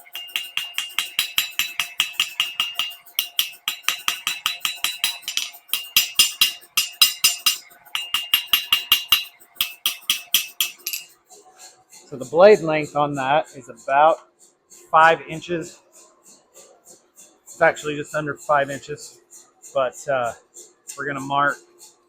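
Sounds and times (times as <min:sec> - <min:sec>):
hammer striking blade on anvil: 0:00.0 - 0:11.2
high metallic ring: 0:00.0 - 0:11.2.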